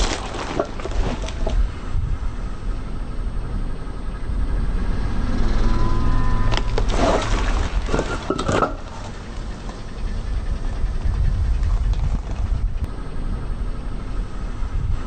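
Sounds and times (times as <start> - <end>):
car tyre crushing brittle objects: 0.0 - 1.6, 6.5 - 9.3
low engine rumble: 0.0 - 15.0.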